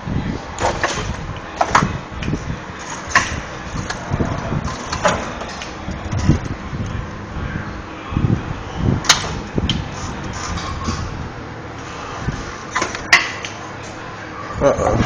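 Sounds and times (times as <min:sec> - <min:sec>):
metallic clanks and knocks: 0:02.8 - 0:06.5.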